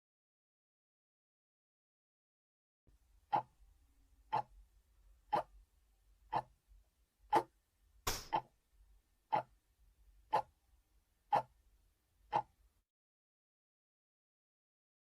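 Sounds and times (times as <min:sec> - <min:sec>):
clock ticking: 0:03.3 - 0:03.6, 0:04.3 - 0:04.5, 0:05.3 - 0:05.5, 0:06.3 - 0:06.6, 0:08.1 - 0:08.6, 0:09.3 - 0:09.6, 0:10.3 - 0:10.5, 0:11.3 - 0:11.5, 0:12.3 - 0:12.6.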